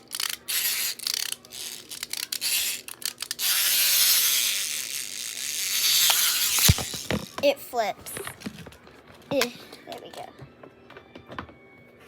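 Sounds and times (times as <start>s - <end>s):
fidget toys scraping and rubbing: 0.0s - 8.8s.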